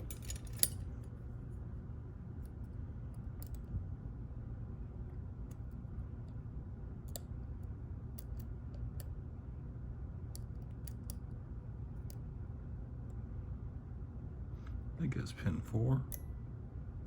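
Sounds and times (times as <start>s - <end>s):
lock pick clicking pins: 0.0s - 0.9s, 3.2s - 3.7s, 7.0s - 9.2s, 10.3s - 11.3s
steady low hum: 0.0s - 17.0s.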